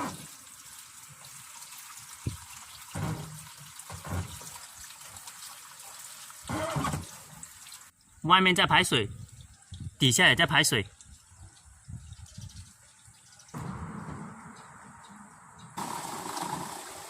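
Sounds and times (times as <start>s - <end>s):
drain water running: 0.0s - 8.0s, 15.8s - 17.0s.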